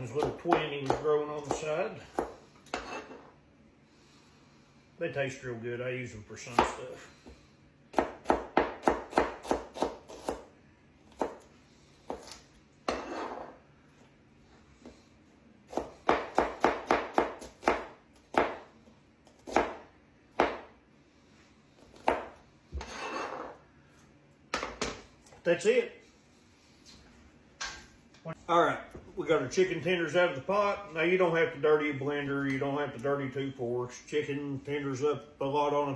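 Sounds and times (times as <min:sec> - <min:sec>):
knife chopping vegetables: 0:00.0 - 0:03.3, 0:06.5 - 0:13.6, 0:15.7 - 0:20.8, 0:21.8 - 0:23.4
knife scraping cutting board: 0:02.2 - 0:03.4, 0:11.2 - 0:13.6, 0:22.7 - 0:23.6.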